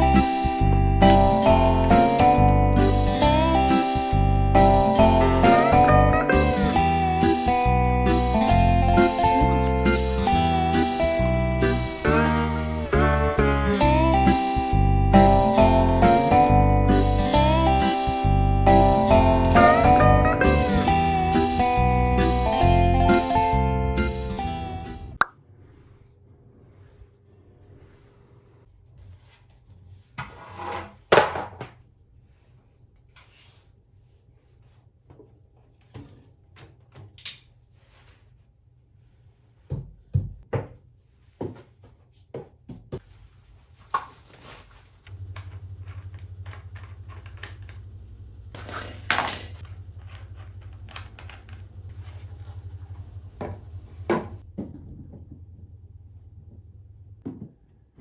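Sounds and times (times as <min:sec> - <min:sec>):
household objects thunking and clattering: 0:30.2 - 0:31.8, 0:48.6 - 0:49.6, 0:53.4 - 0:58.0.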